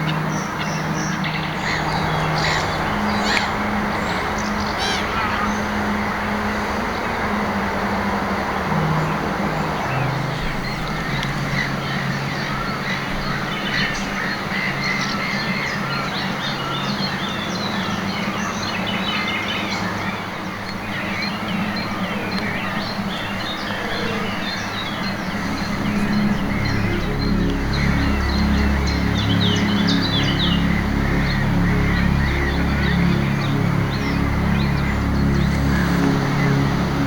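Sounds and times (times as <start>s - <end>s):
wind noise: 0.0s - 16.8s
birds chirping and singing: 0.0s - 37.0s
low background music: 0.0s - 37.0s.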